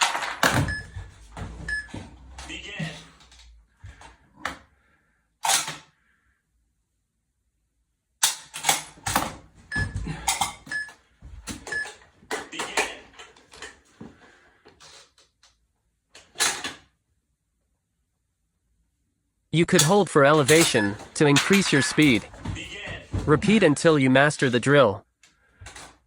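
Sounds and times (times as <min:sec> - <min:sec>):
short high beeps: 0:20.6 - 0:22.2.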